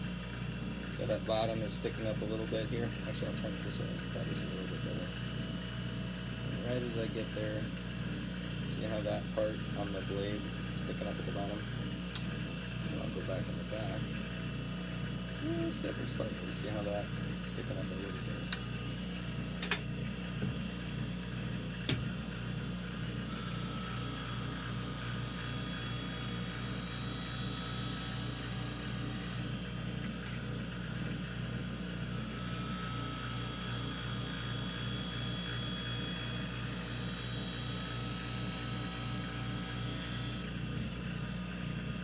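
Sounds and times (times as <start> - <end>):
sharpening machine humming: 21.8 - 41.1
blade hissing on grinding wheel: 23.3 - 29.6, 32.1 - 40.5.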